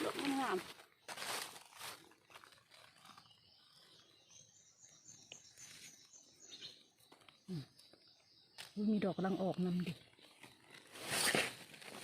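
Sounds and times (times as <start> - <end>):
bird twittering: 3.1 - 11.6.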